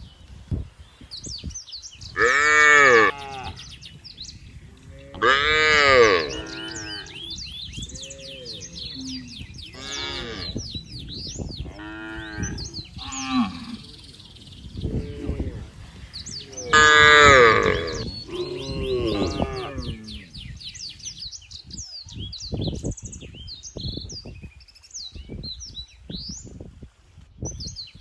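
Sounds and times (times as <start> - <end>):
small birds chirping: 0.0 - 26.6
cattle mooing: 2.2 - 3.6, 5.0 - 7.2, 8.0 - 10.6, 11.7 - 14.0, 14.8 - 20.3.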